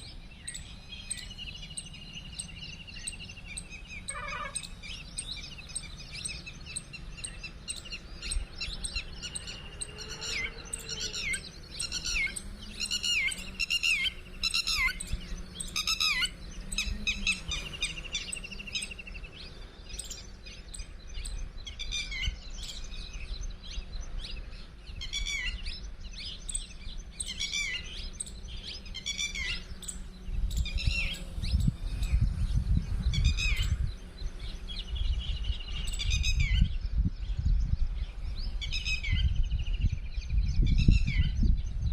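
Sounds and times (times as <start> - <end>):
bird trilling call: 0.0 - 19.3, 26.4 - 32.2
birds chirping: 0.0 - 41.9.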